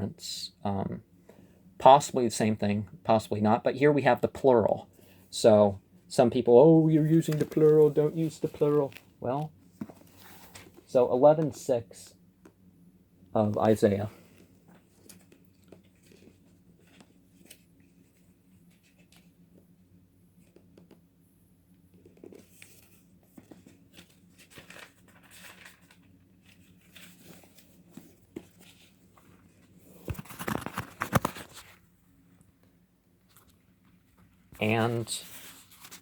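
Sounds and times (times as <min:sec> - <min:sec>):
book pages rustling: 0:06.9 - 0:11.6, 0:13.5 - 0:19.6, 0:21.9 - 0:32.0, 0:33.2 - 0:36.0.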